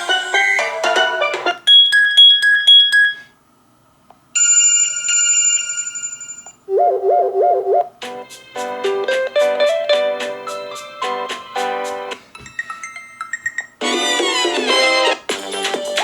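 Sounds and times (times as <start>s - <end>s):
pulsing two-tone electronic ring: 5.6s - 7.9s
fast low warbling trill: 6.7s - 7.9s
melodic ringtone tune: 6.7s - 7.9s.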